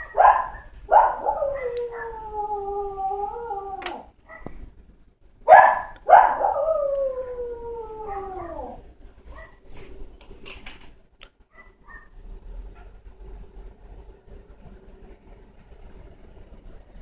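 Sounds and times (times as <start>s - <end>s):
dog howling: 0.0s - 4.5s, 5.5s - 8.9s.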